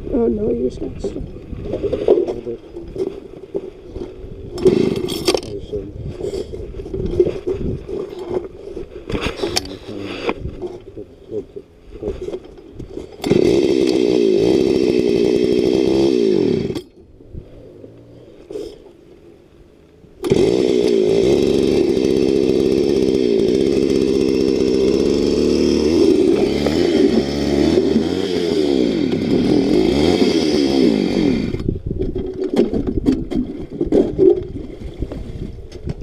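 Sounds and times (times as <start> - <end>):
small engine running hard: 13.1 - 16.9, 20.2 - 31.7.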